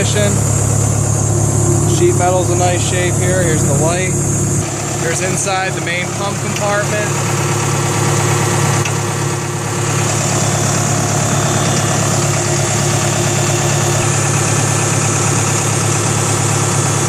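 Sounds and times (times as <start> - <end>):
excavator diesel engine idling: 0.0 - 17.0.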